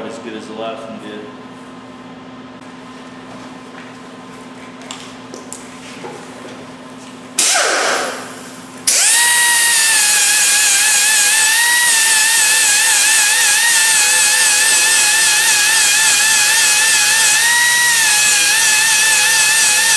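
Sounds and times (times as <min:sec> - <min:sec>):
power tool motor whining: 0:07.4 - 0:19.9.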